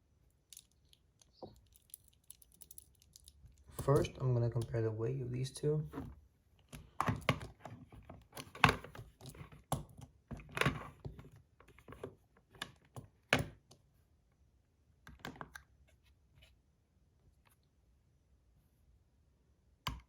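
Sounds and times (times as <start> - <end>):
metal toys clicking and knocking: 0.5 - 4.8.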